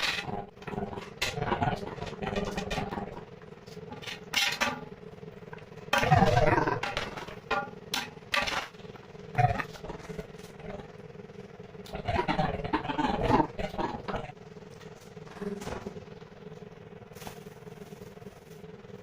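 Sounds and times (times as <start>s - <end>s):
faint steady hum: 0.0s - 19.0s
metal utensils clattering: 4.0s - 4.8s.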